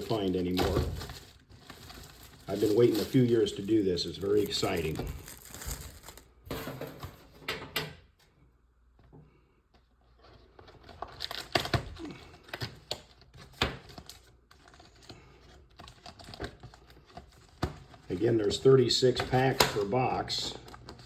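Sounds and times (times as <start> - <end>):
wrapper crinkling: 0.0 - 6.4.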